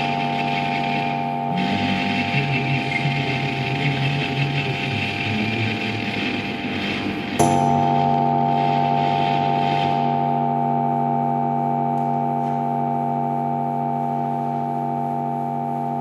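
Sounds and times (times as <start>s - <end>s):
held musical chord: 0.0s - 16.0s.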